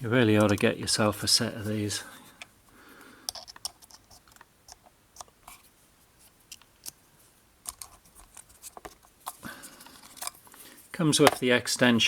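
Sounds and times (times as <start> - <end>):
screwdriver bits clicking and tapping: 3.3 - 5.3, 7.6 - 9.0.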